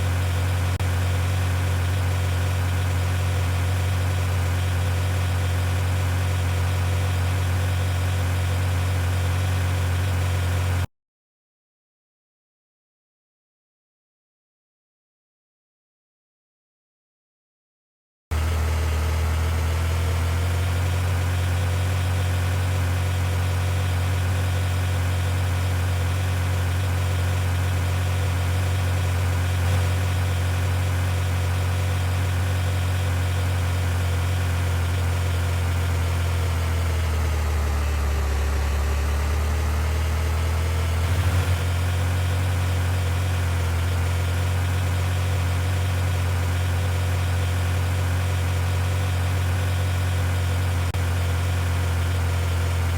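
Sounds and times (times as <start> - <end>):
car engine running: 0.0 - 10.9, 18.3 - 52.9.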